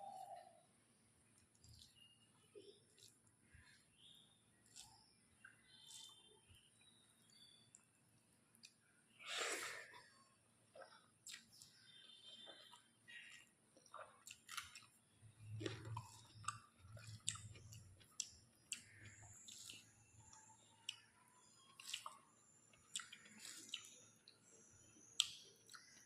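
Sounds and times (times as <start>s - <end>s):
chewing with wet mouth smacks: 1.4s - 3.9s, 4.6s - 6.3s, 10.7s - 24.5s, 25.1s - 26.0s.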